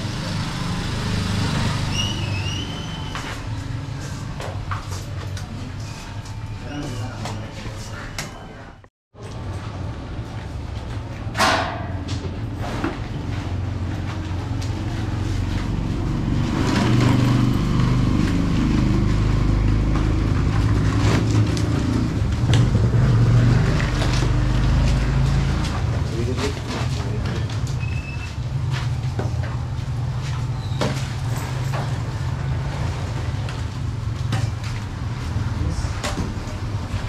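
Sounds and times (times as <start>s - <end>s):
engine running: 0.0s - 2.0s, 13.8s - 26.4s.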